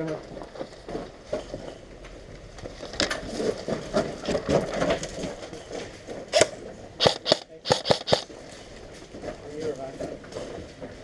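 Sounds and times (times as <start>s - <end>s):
airsoft gun shots: 6.3s - 8.3s.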